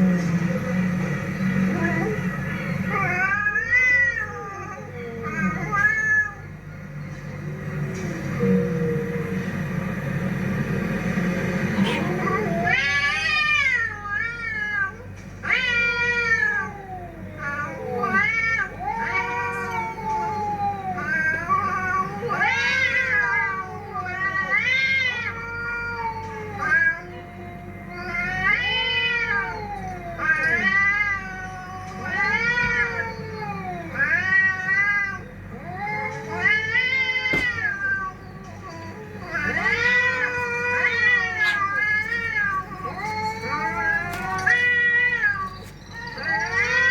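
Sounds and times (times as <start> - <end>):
cat meowing and yowling: 11.8 - 46.9.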